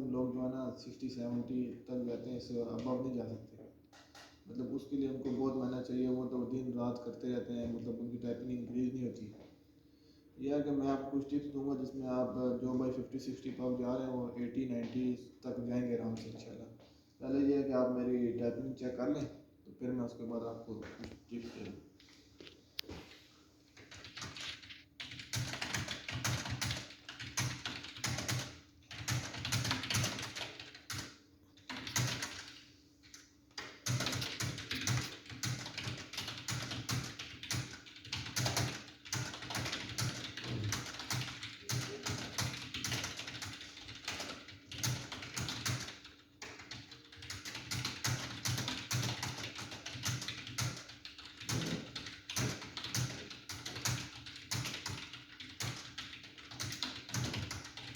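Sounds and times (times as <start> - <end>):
fast typing on keyboard: 23.8 - 57.9.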